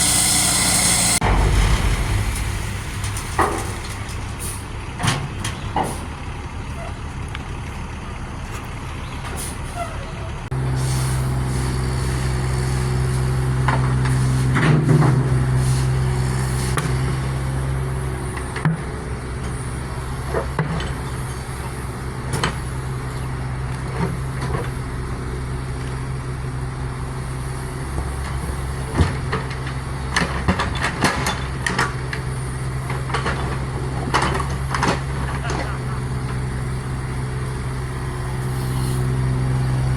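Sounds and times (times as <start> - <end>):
heavy vehicle engine idling: 0.0 - 39.9
knocks and clanks: 0.8 - 6.1, 28.9 - 37.2.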